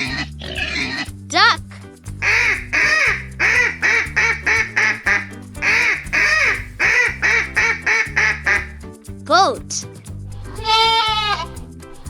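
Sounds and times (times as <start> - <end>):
children's song with bass line: 0.0 - 12.0
duck quacking: 2.2 - 8.8.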